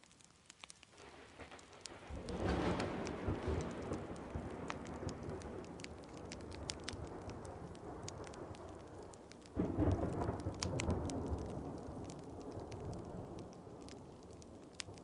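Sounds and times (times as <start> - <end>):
sharp crackles: 0.0 - 15.0
steady rain: 0.0 - 15.0
thunder rumbling: 1.0 - 15.0.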